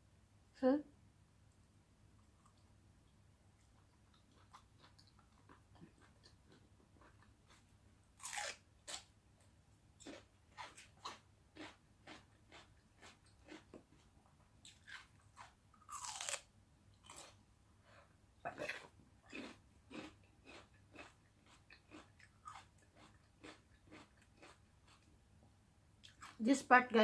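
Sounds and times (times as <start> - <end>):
person chewing crunchy food: 3.6 - 9.1, 10.0 - 17.4, 18.4 - 25.1, 26.0 - 26.4.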